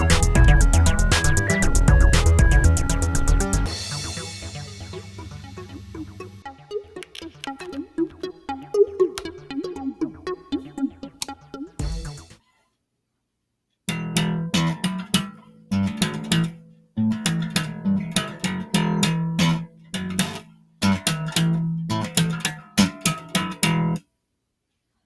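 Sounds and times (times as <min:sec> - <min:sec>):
bass line: 0:00.0 - 0:12.3
plucked guitar tune: 0:00.0 - 0:12.3, 0:13.9 - 0:24.0.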